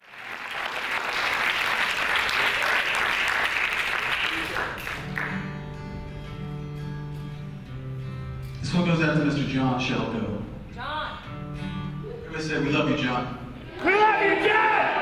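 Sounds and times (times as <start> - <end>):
audience applauding: 0.0 - 5.5.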